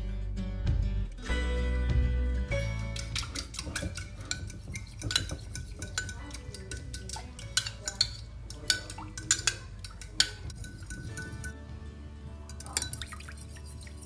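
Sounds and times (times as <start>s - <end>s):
soft background music: 0.0s - 14.0s
spoon clinking while stirring: 2.8s - 11.6s, 12.5s - 14.0s.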